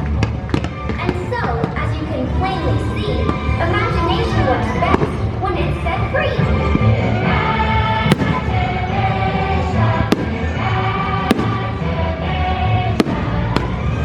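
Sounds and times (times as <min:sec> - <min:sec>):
loud show music: 0:00.0 - 0:14.0
firework bangs: 0:08.0 - 0:08.5, 0:10.0 - 0:10.6, 0:11.2 - 0:11.8, 0:12.9 - 0:14.0.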